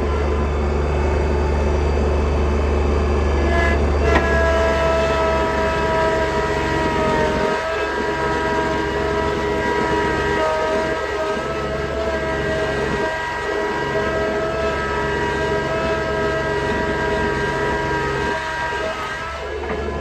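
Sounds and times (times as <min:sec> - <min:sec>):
tractor engine running under load: 0:00.0 - 0:20.0.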